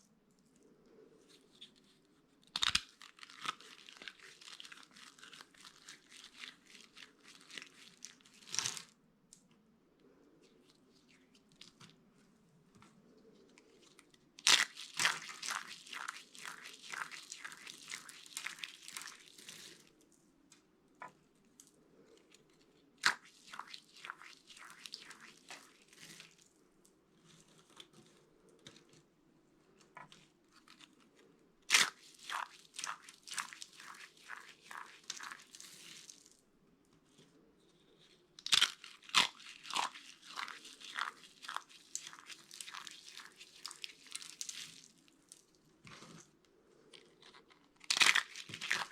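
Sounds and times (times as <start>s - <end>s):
dry soap crunching: 1.4s - 8.9s, 13.7s - 19.9s, 22.2s - 26.5s, 30.0s - 36.4s, 37.8s - 48.9s.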